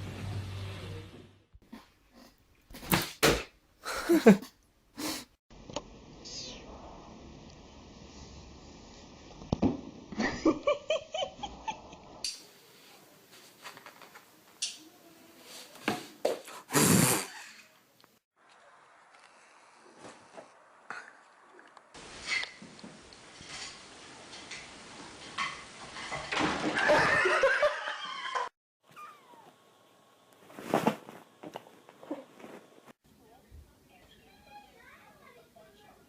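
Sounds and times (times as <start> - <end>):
cat meowing and yowling: 28.9 - 29.5.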